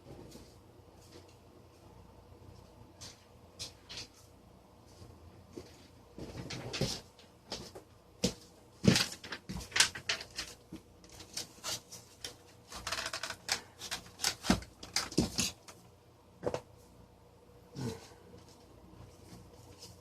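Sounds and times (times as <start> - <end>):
plastic fan parts clicking and rattling: 8.8 - 16.6.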